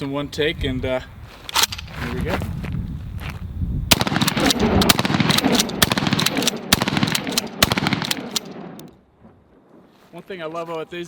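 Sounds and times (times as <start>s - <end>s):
shotgun pump action: 3.9s - 8.9s
shotgun shots echoing: 3.9s - 8.9s.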